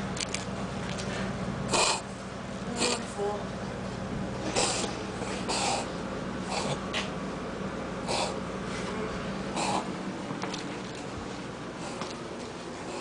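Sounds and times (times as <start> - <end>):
dog wheezing and snorting: 1.7 - 2.1, 4.4 - 7.1, 8.0 - 8.4, 9.5 - 10.0.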